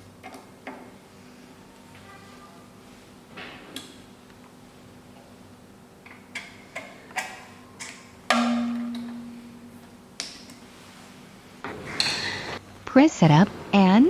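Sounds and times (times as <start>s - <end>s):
ringing metal strike: 8.3s - 9.9s.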